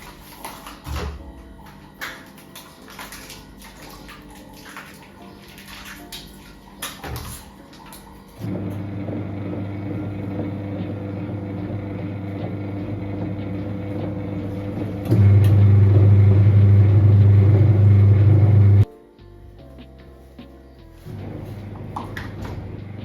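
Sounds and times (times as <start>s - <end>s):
electric motor humming: 8.4s - 18.8s.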